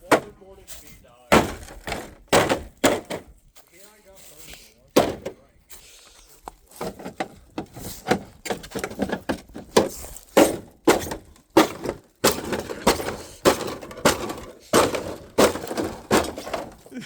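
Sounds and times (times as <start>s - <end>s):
plastic and glass breaking: 8.5s - 16.9s.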